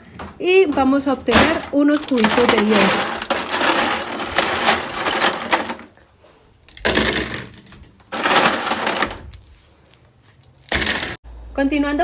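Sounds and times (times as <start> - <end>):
ice cubes clattering: 0.0 - 6.0, 8.1 - 9.3.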